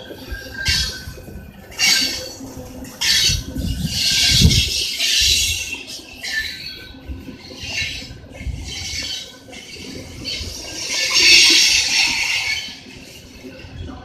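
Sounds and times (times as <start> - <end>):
freight train rolling past: 0.0 - 14.0.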